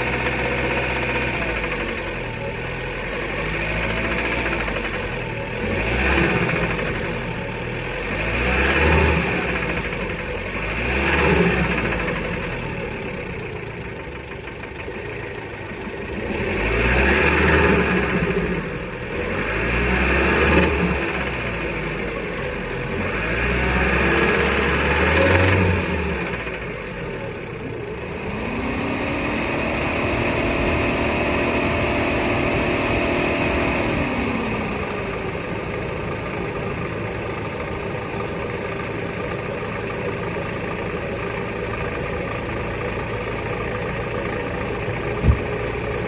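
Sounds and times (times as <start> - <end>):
car engine revving: 0.0 - 46.0
engine knocking: 0.0 - 46.0.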